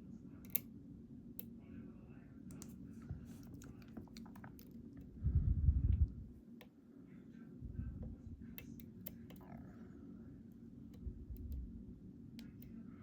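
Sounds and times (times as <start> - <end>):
low rumble: 5.1 - 6.3.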